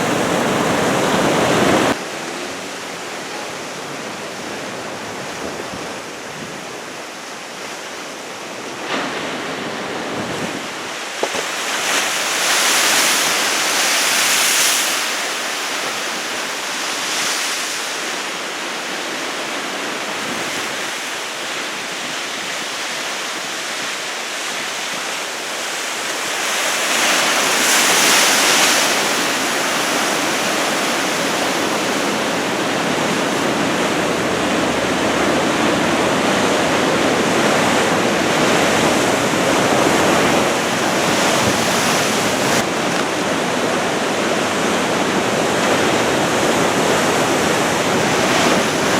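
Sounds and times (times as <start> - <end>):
heavy surf breaking: 0.0 - 6.8, 24.5 - 48.9.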